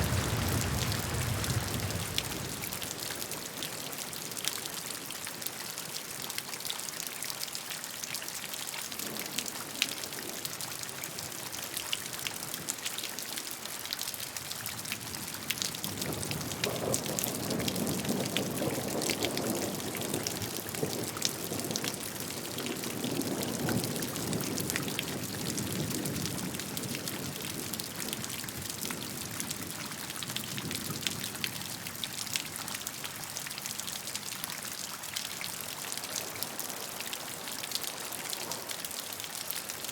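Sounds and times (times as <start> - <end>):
rain hissing: 0.0 - 4.3
raindrops pattering on a surface: 0.0 - 39.9.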